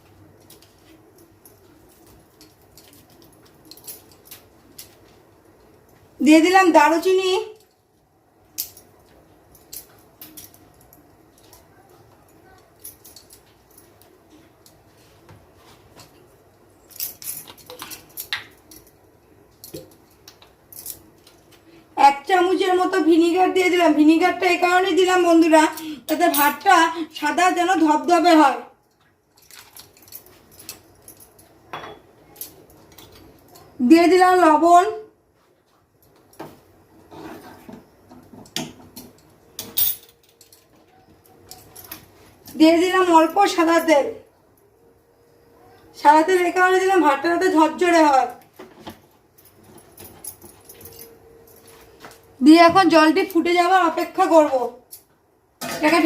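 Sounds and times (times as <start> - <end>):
kitchen utensils clinking: 31.7 - 32.2.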